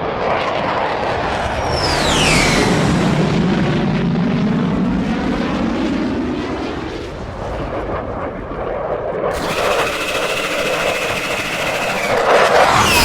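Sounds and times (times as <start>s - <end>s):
jet aircraft roaring overhead: 1.4s - 4.1s, 9.3s - 13.0s.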